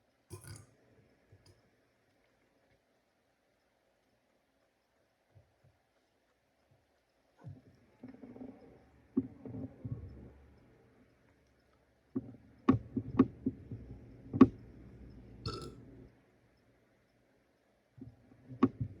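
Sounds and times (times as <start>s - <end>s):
person burping: 15.5s - 15.8s.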